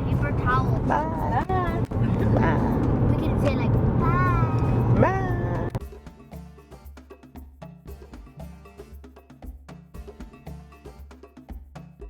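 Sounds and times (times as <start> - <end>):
low bass: 0.0 - 5.8
instrumental music with wood-block beat: 0.0 - 12.0.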